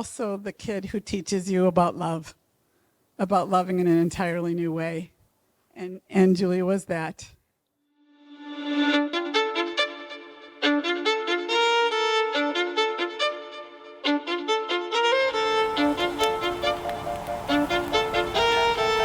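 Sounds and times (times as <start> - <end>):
violin music: 8.0 - 19.0.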